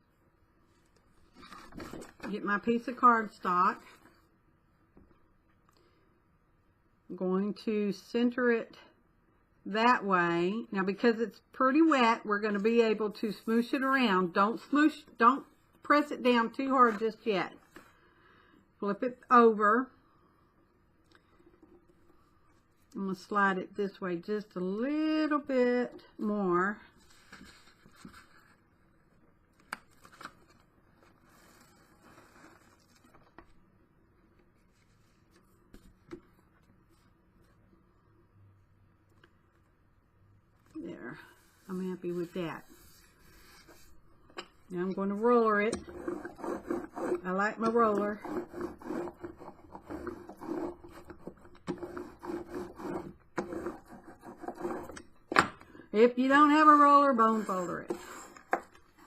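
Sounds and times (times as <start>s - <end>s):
paper rustling and scraping: 0.7s - 2.4s, 27.0s - 33.6s, 34.4s - 37.6s, 40.6s - 44.0s
hand roller rubbing over paper: 41.0s - 44.0s, 44.9s - 55.0s, 56.2s - 58.6s.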